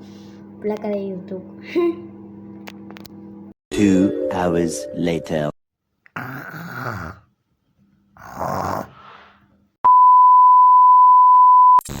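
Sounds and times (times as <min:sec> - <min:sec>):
person snoring: 0:06.1 - 0:07.3, 0:08.2 - 0:09.3.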